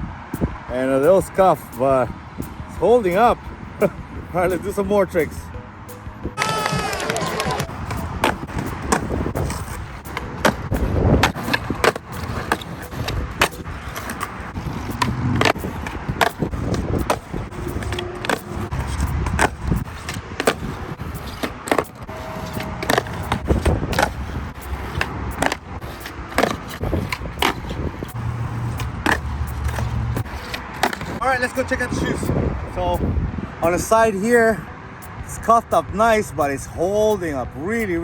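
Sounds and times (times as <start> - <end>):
skateboard wheels rolling on pavement: 0.0 - 38.0
skateboard popping and landing: 6.4 - 31.2.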